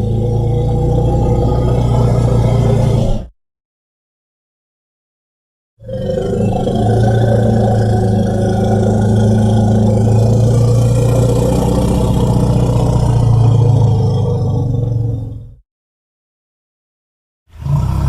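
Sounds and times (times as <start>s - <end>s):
deep engine-like rumble: 0.0s - 3.2s.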